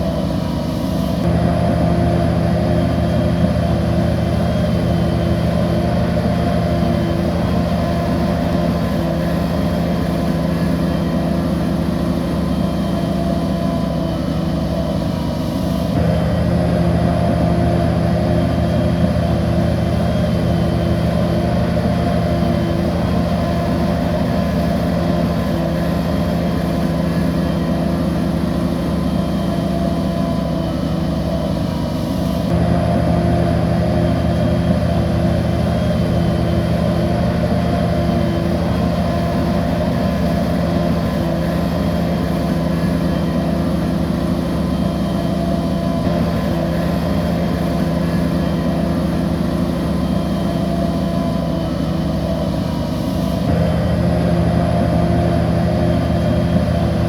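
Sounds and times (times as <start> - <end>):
bulldozer diesel engine running: 0.0 - 57.0.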